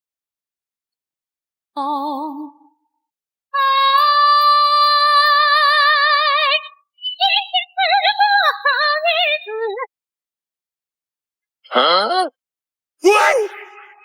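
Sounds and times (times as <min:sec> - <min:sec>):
high singing voice: 0:13.0 - 0:14.0.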